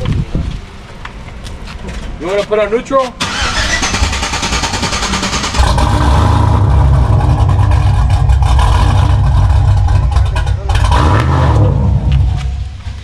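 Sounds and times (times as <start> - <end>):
truck engine running: 3.2 - 13.0.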